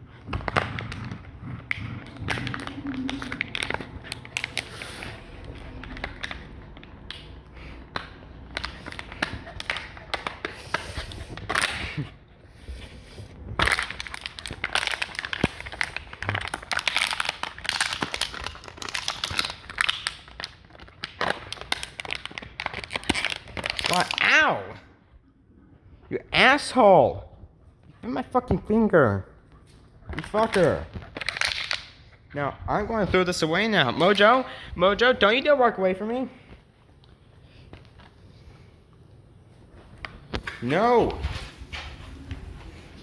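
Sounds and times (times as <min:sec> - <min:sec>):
dog chewing plastic bottle: 0:00.0 - 0:12.1, 0:13.2 - 0:24.3, 0:30.0 - 0:32.2.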